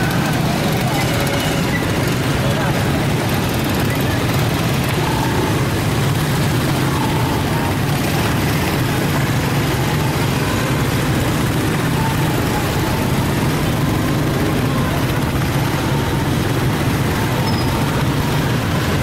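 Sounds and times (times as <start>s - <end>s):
heavy vehicle engine humming: 0.0s - 19.0s
road noise: 0.0s - 19.0s.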